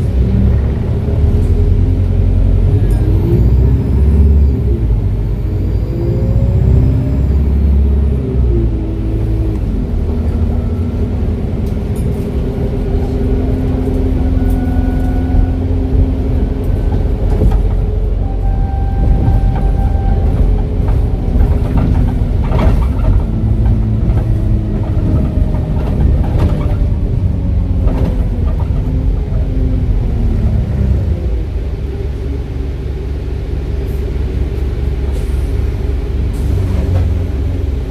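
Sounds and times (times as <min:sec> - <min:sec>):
bus engine drone: 0:00.0 - 0:37.9
turbo whistling: 0:18.2 - 0:20.6.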